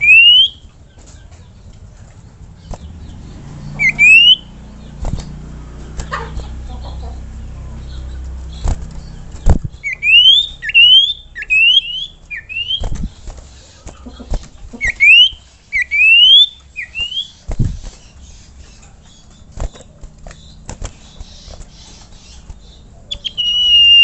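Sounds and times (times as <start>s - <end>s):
bird whistling rising notes: 0.0s - 0.6s, 3.6s - 4.6s, 9.8s - 13.0s, 14.8s - 17.4s, 23.1s - 24.0s.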